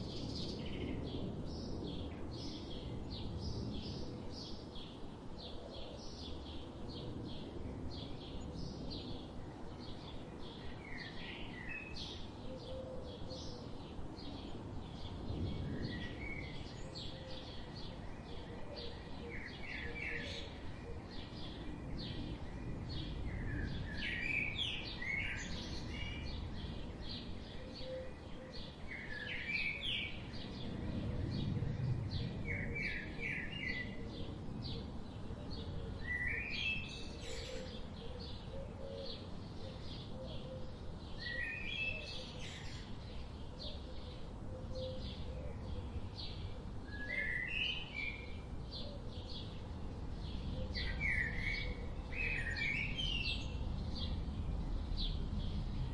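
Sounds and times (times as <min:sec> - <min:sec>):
birds chirping and singing: 0:32.2 - 0:54.2.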